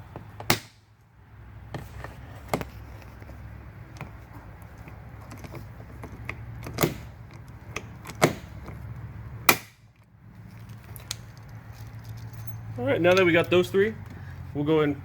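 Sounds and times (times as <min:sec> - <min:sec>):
pop rivets snapping: 0:00.2 - 0:00.9, 0:05.3 - 0:08.8, 0:09.5 - 0:12.5.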